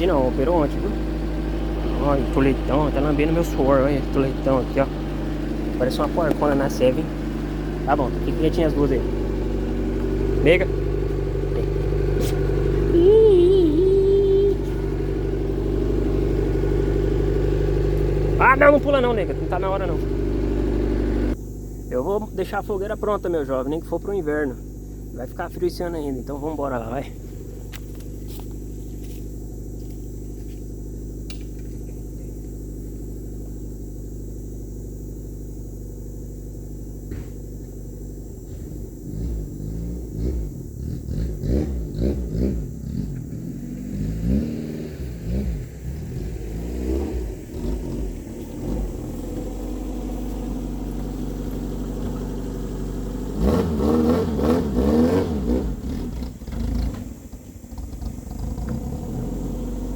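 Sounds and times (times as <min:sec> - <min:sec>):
truck engine idling and revving: 0:00.0 - 0:59.9.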